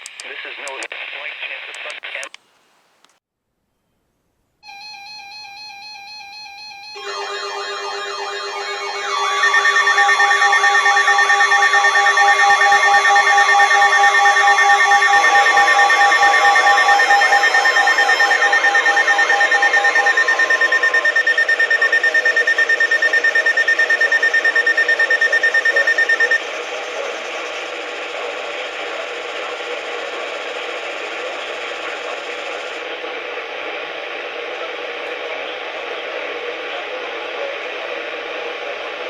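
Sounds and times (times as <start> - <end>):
radio static hiss: 0.0 - 3.2, 7.0 - 39.0
pulsing high-pitched alert tone: 7.0 - 27.2
lower electronic tones: 7.0 - 28.9.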